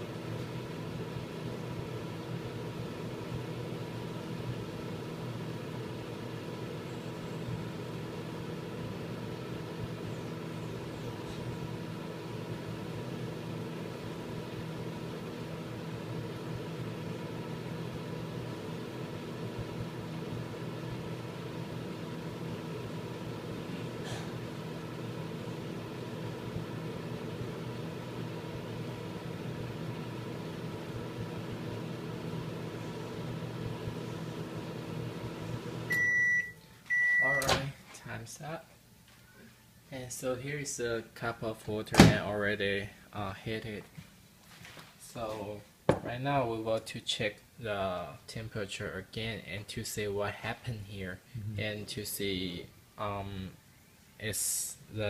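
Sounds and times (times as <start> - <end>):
microwave oven humming: 0.0 - 43.4.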